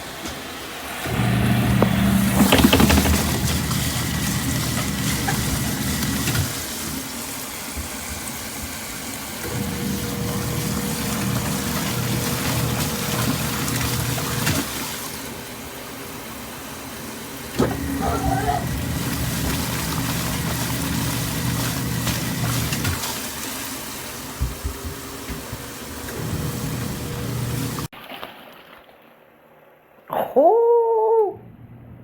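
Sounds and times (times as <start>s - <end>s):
washing machine motor hum: 0.0s - 27.9s
water churning in tub: 0.8s - 29.2s.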